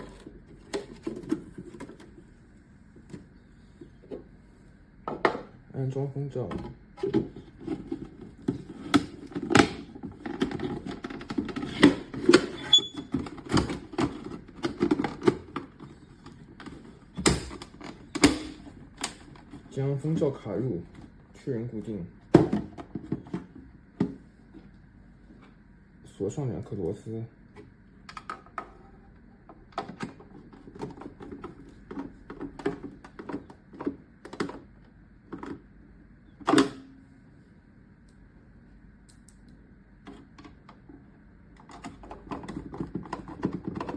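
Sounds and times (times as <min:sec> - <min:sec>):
plastic parts clicking and knocking: 0:06.5 - 0:19.6, 0:29.5 - 0:34.7, 0:41.6 - 0:43.9.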